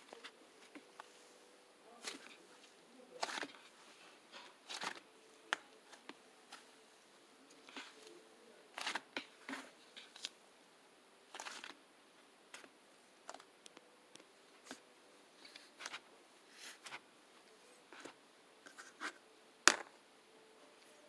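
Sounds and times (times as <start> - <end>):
faint steady hum: 0.0 - 21.0
small objects clicking and rustling: 3.2 - 3.7, 4.3 - 6.7, 11.3 - 11.8.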